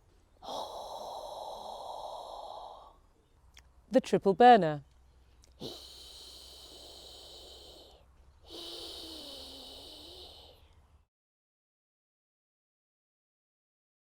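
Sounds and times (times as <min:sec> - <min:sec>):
woman breathy exhaling: 0:00.4 - 0:03.0, 0:05.6 - 0:10.7.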